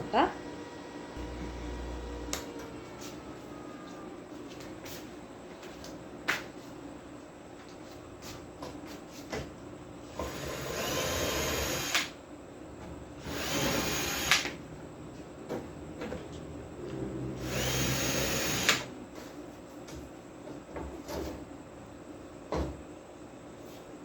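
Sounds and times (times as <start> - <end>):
electric screwdriver whirring: 10.2 - 12.1, 13.2 - 14.5, 17.4 - 18.9.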